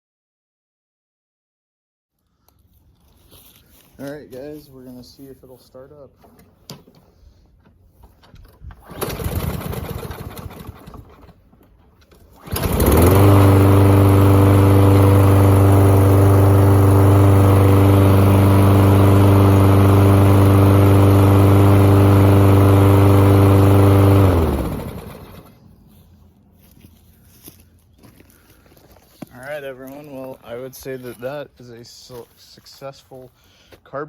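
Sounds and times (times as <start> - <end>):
lawn mower pull-start: 7.7 - 25.6
lawn mower engine running: 8.7 - 26.0.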